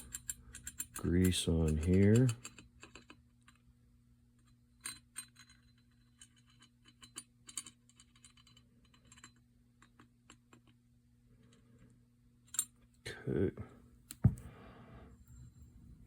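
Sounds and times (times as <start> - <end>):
small metal parts clicking: 0.0 - 3.6, 4.4 - 10.8
low steady hum: 0.0 - 16.0.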